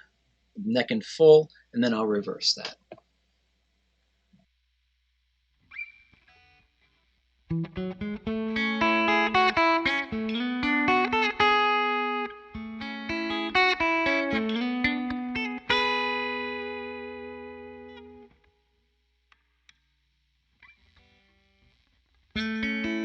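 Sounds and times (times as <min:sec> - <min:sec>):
clean electric guitar playing: 0:07.5 - 0:18.4, 0:20.6 - 0:23.0.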